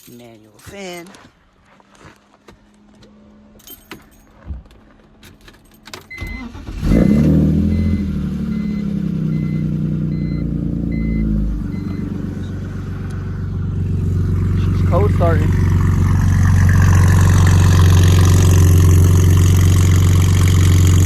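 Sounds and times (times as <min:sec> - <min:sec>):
car engine cranking and idling: 0:01.4 - 0:21.0
keys rattling and clicking: 0:03.5 - 0:06.2
electronic warning chime beeping: 0:06.1 - 0:12.6.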